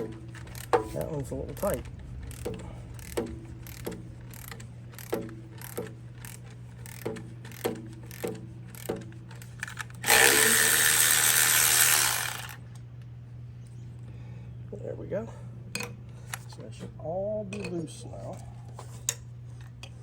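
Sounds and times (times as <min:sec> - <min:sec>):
hand ratchet clicking: 0:00.0 - 0:12.6
loud rasping noise: 0:10.0 - 0:12.6.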